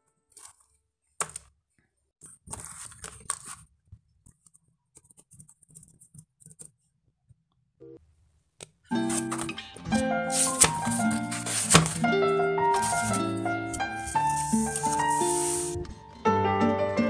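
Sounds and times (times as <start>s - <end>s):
rustling tear: 9.0s - 15.8s.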